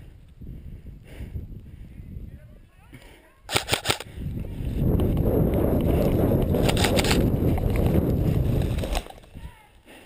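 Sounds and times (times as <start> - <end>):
rough rumbling on microphone: 4.1 - 9.6.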